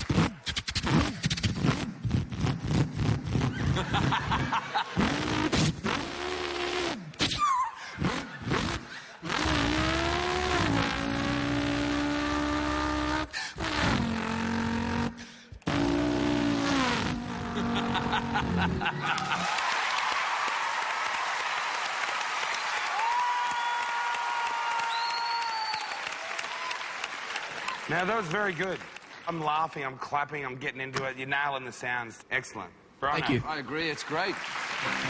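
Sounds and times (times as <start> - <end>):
man imitating car engine: 7.6 - 19.4
audience applauding: 18.3 - 29.3, 33.5 - 35.0.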